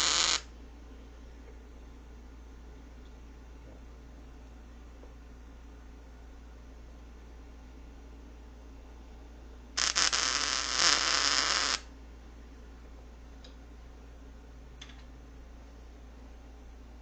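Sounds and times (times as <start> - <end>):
welder arc crackling: 0.0 - 0.5, 9.8 - 11.9.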